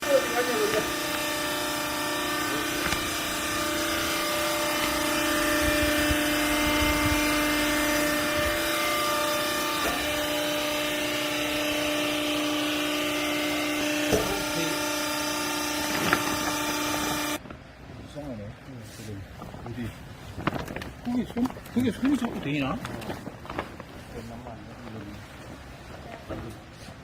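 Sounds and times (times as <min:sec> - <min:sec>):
baling press motor hum: 0:00.0 - 0:17.4.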